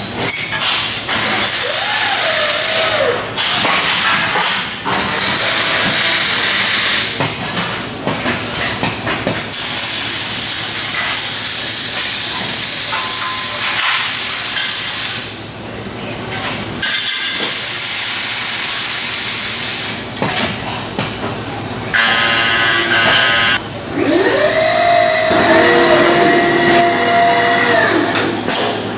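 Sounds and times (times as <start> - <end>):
loud welding hiss: 9.5 - 15.4, 16.8 - 20.0
motor whining: 23.9 - 28.4.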